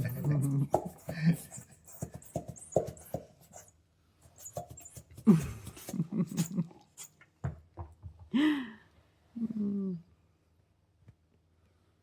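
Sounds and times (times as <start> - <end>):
dog grunting and whining: 0.0 - 0.8.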